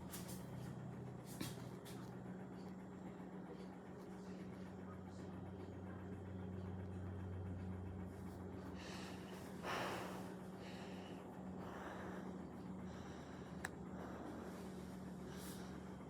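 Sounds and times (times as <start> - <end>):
faint low hum: 0.0 - 16.0
person breathing: 8.7 - 16.0.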